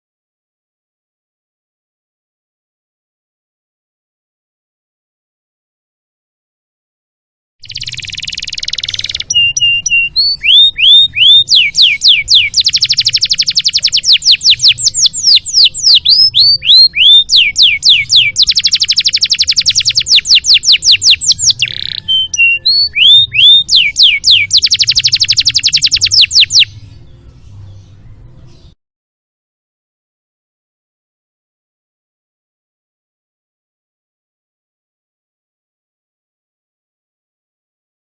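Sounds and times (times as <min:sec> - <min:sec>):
canary singing whistles and trills: 0:07.6 - 0:28.8.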